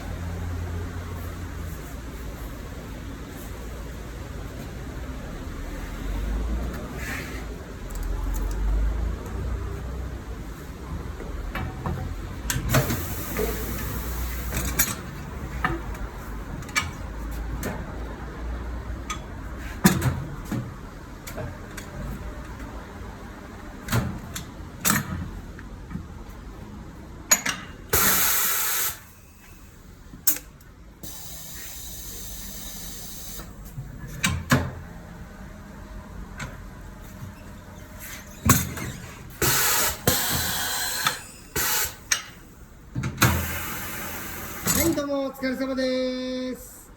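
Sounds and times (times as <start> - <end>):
compressed air hissing: 12.8 - 14.6, 28.0 - 29.2, 31.0 - 33.5, 39.4 - 42.3, 43.3 - 44.7
metallic knocks and clicks of tools: 27.3 - 27.8.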